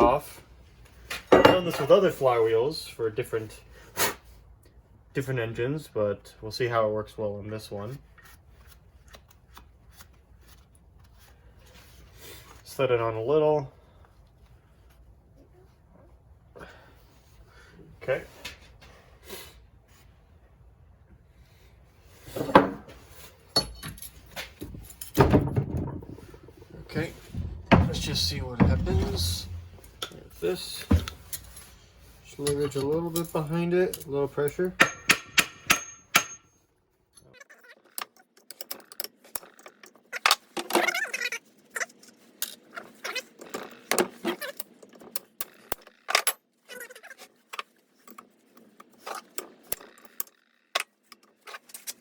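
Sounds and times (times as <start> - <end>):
metal tools clinking: 1.2 - 2.0, 23.5 - 25.4, 27.2 - 36.5
metallic clank: 1.3 - 1.9, 27.1 - 30.2
hammer strike on metal: 34.8 - 36.4.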